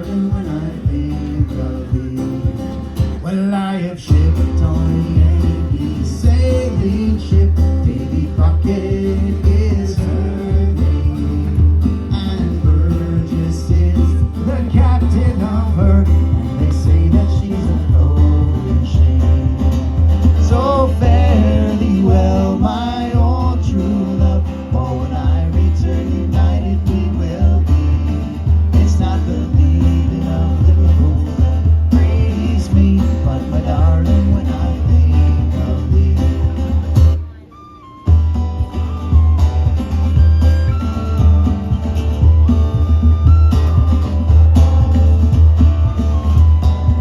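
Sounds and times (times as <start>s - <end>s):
percussion: 0.0s - 3.3s, 4.1s - 37.2s, 37.8s - 47.0s
acoustic folk band playing: 0.0s - 47.0s
strummed guitar: 0.0s - 47.0s.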